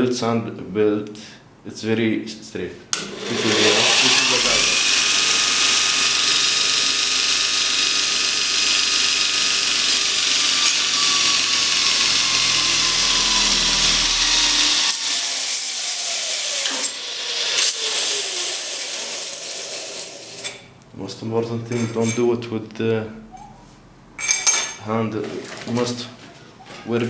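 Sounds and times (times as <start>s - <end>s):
belt grinder whining: 3.0s - 20.6s.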